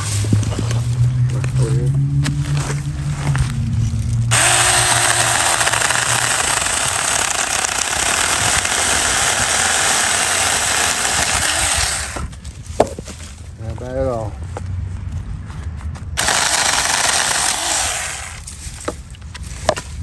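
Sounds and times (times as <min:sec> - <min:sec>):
chain cutting through wood: 0:02.5 - 0:12.3, 0:16.2 - 0:18.9
electric chainsaw motor hum: 0:04.3 - 0:12.3, 0:16.2 - 0:18.5.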